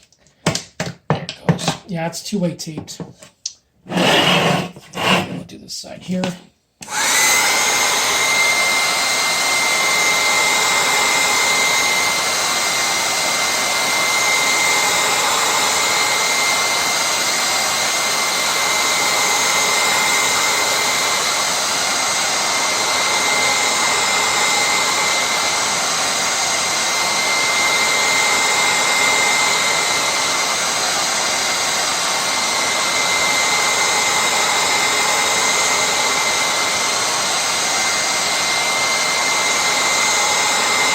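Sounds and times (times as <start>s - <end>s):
heat gun blowing hot air: 3.8s - 5.4s, 6.2s - 40.9s.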